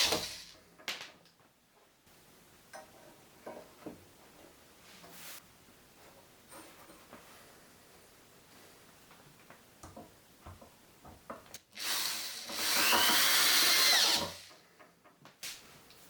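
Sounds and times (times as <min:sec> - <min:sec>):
power tool motor whine: 0:11.8 - 0:14.4.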